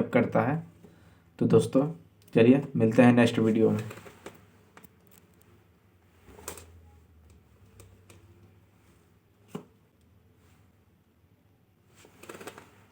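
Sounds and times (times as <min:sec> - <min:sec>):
soft rustle: 0:11.8 - 0:12.9.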